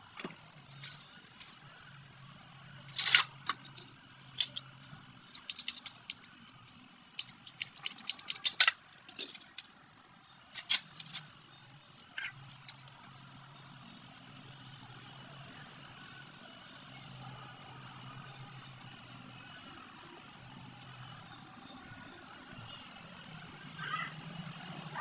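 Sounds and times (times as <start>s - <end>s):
sharp clicks of hard objects: 2.9s - 4.6s, 5.4s - 9.7s, 10.6s - 11.2s.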